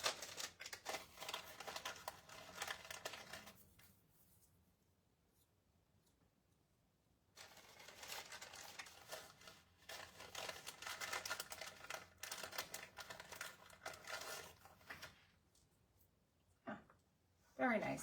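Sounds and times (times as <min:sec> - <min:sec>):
paper and plastic crinkling: 0:00.0 - 0:04.4, 0:07.4 - 0:15.7.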